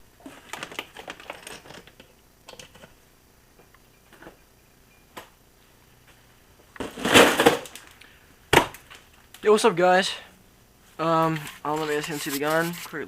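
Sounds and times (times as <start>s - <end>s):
scraping rustle: 11.2s - 13.0s.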